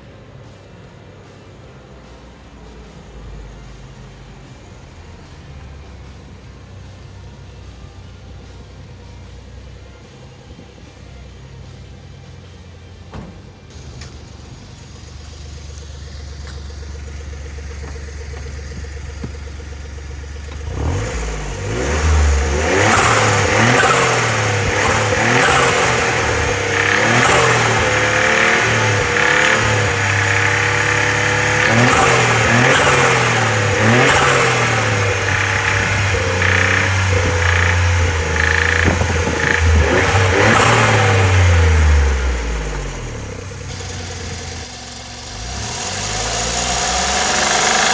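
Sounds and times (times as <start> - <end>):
engine idling and revving: 2.0 - 47.9
engine knocking: 13.7 - 47.9.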